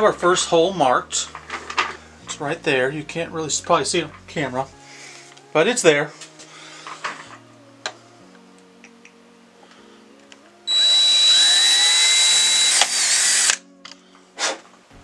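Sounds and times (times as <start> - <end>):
power drill whining: 10.7 - 13.6.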